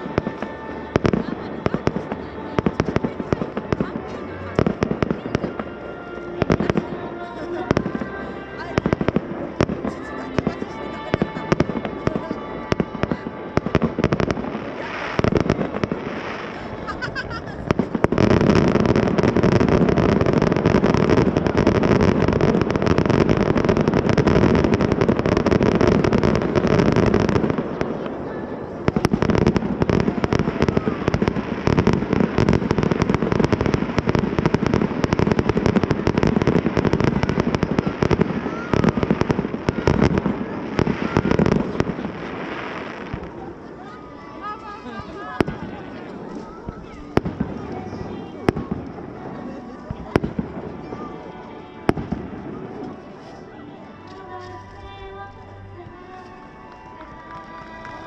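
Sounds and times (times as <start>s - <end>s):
fireworks bangs and crackles: 0.0s - 54.8s.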